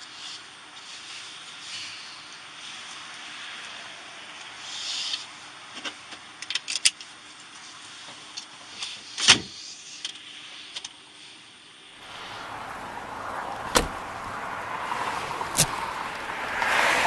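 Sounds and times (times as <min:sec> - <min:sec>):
rushing vehicle noise: 0:00.0 - 0:06.1, 0:12.0 - 0:17.0
sharp knocks: 0:13.7 - 0:14.0.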